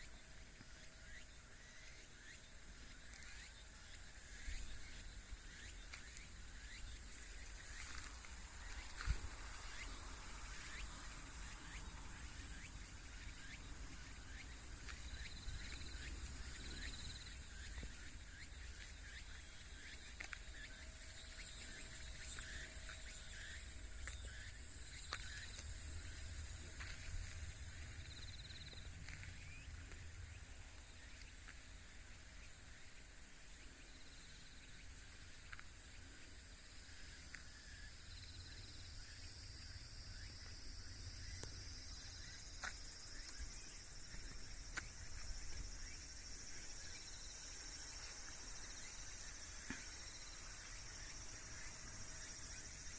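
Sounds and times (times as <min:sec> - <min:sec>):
insects chirping: 0:00.0 - 0:52.9
steady low rumble: 0:23.6 - 0:32.2.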